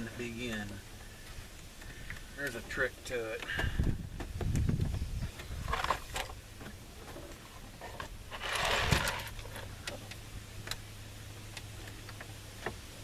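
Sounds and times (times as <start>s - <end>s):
short scraping rustle: 7.0s - 9.8s.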